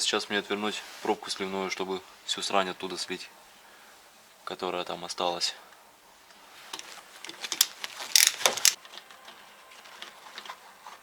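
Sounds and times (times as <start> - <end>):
wrench clicking and clanking: 6.8 - 8.8.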